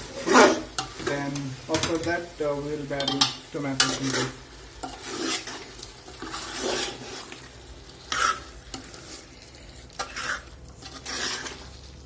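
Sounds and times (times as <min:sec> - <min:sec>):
utensil scraping a pan: 0:00.0 - 0:01.3, 0:03.7 - 0:12.0
faint frying sizzle: 0:00.0 - 0:12.0.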